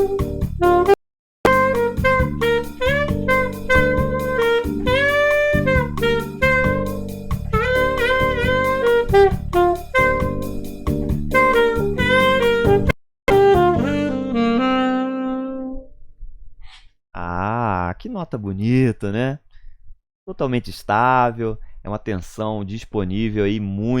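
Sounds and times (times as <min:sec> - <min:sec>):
jazz backing track: 0:00.0 - 0:15.9
saxophone playing: 0:00.0 - 0:15.9.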